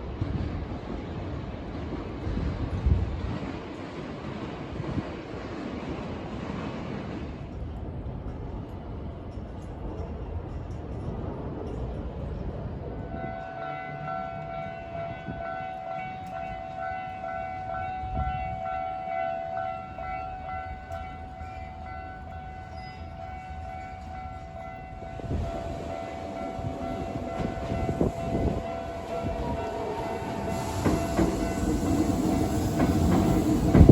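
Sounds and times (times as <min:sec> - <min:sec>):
train rumble and wheel clacks: 0:00.0 - 0:33.9
level crossing warning bell ringing: 0:13.2 - 0:32.5.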